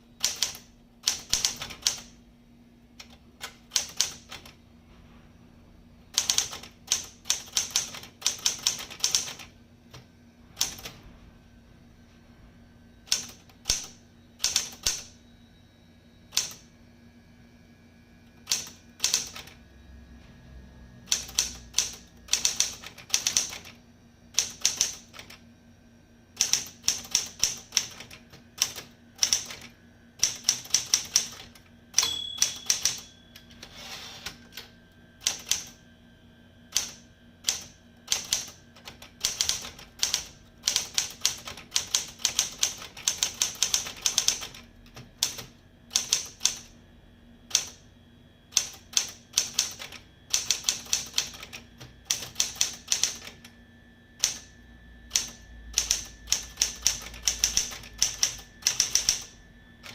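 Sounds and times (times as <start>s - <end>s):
typewriter keys striking: 30.2s - 33.0s, 36.8s - 44.6s, 55.2s - 59.9s
typewriter bell ring: 32.0s - 33.7s.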